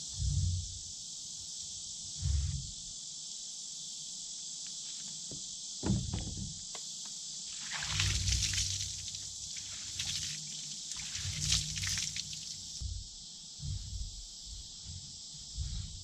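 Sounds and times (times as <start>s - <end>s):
high drone of insects: 0.0s - 16.0s
lumber boards thumping: 5.3s - 6.8s
water spray hissing: 7.5s - 12.8s.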